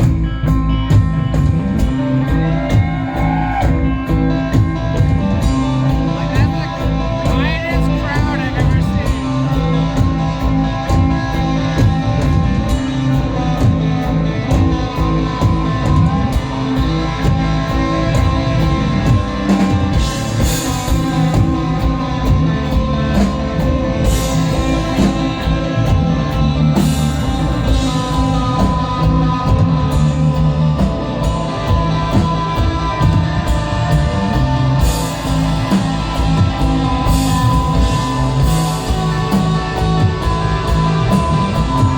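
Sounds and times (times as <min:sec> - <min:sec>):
bass guitar: 0:00.0 - 0:41.9
drum kit beat: 0:00.0 - 0:41.9
electric guitar sustained notes: 0:00.0 - 0:41.9.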